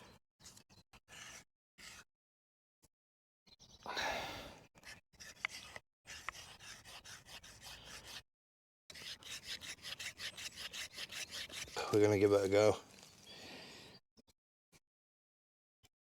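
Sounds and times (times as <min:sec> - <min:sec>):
bow drill rubbing and scraping: 0:00.4 - 0:02.0, 0:04.8 - 0:08.2, 0:08.9 - 0:13.3
breathy exhale: 0:03.9 - 0:04.6.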